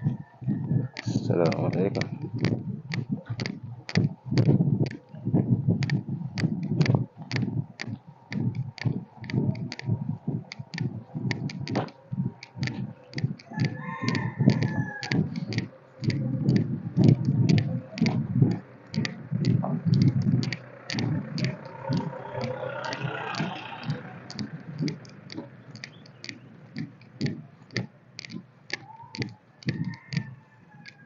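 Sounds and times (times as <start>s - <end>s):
footsteps with sharp clicks: 0.0s - 31.0s
rooster crowing: 13.5s - 15.4s, 28.8s - 31.0s.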